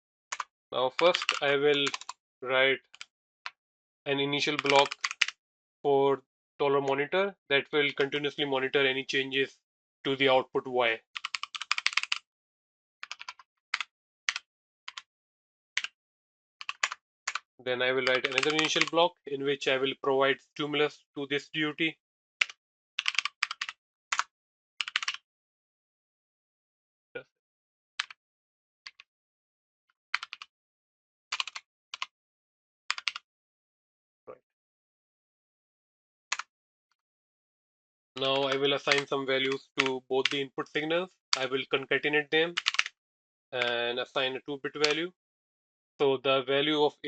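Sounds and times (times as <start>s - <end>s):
computer keyboard typing: 1.0s - 2.1s, 4.4s - 5.3s, 11.2s - 12.3s, 13.0s - 15.1s, 16.6s - 17.4s, 18.0s - 19.0s, 22.4s - 25.2s, 30.2s - 30.5s, 31.4s - 32.1s, 32.9s - 33.2s, 38.2s - 40.8s, 42.6s - 42.9s.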